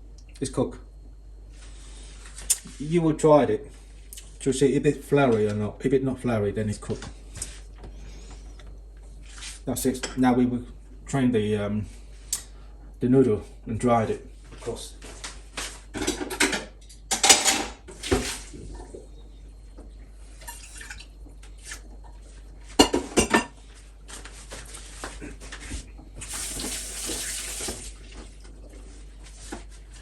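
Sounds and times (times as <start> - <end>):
metal pot and utensils clattering: 16.0 - 17.8
water rushing into sink: 26.2 - 28.0.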